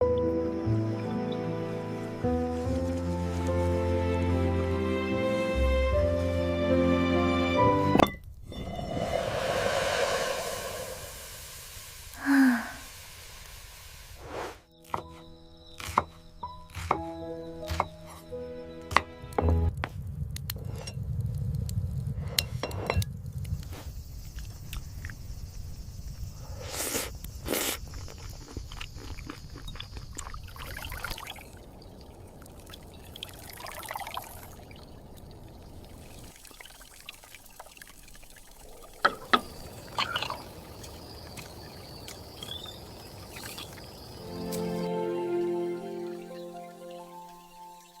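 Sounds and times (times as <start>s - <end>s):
water pouring and dripping: 29.8s - 48.0s.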